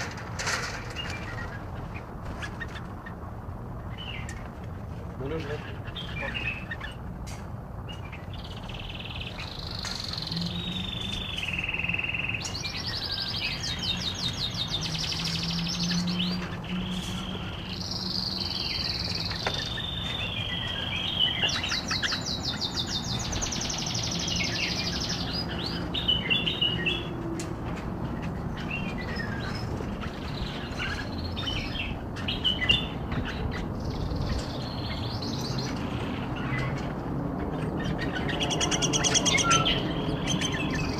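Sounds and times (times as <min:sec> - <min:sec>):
birds singing: 0:00.0 - 0:40.9.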